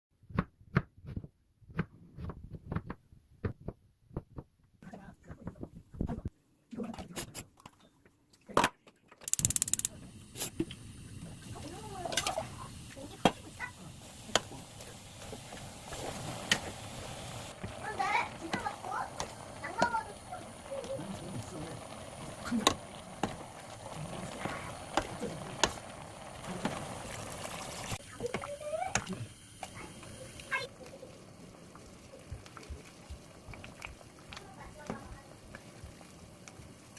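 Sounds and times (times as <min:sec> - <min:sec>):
utensils clicking on cookware: 0:09.2 - 0:10.0, 0:17.6 - 0:21.0.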